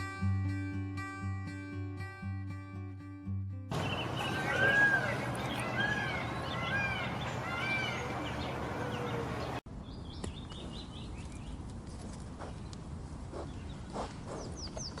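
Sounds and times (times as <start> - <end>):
small birds chirping: 3.7 - 11.7, 12.4 - 15.0.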